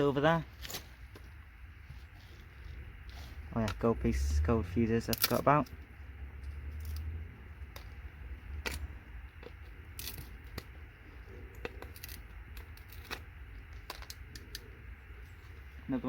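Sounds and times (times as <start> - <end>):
low steady rumble: 0.0 - 16.0
hand tools clicking and scraping: 5.0 - 5.7, 6.7 - 14.8.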